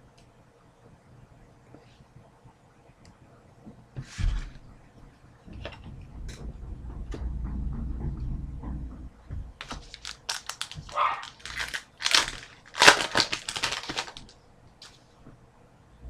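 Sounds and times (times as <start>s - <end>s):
low rumble of handling: 0.8s - 16.0s
foil wrapper crinkling and tearing: 9.6s - 14.3s.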